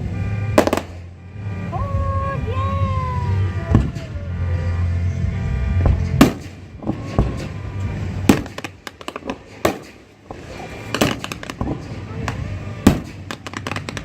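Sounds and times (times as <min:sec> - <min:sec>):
fireworks bangs: 0:00.0 - 0:04.4, 0:05.3 - 0:14.0
small fireworks pops: 0:08.3 - 0:14.0.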